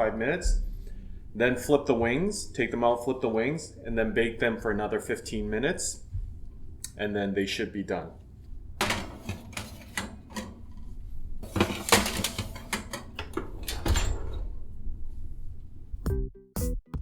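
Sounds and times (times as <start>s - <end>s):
cookware clattering: 8.8s - 14.5s.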